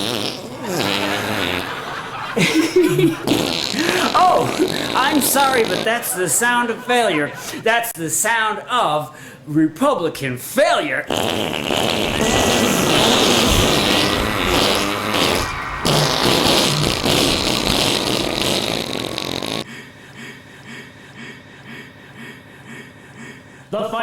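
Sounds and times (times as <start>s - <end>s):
fart sound effect: 0.0s - 5.9s, 11.1s - 19.6s.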